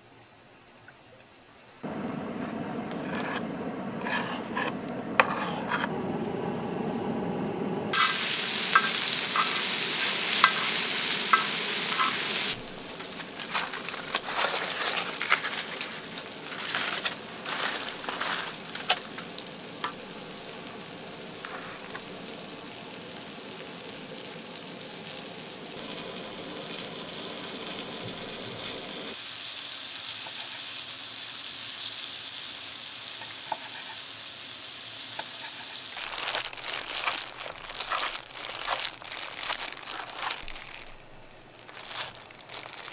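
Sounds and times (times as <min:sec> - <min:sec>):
food sizzling in a pan: 0:07.9 - 0:42.9
utensils clicking and knocking: 0:08.0 - 0:20.0.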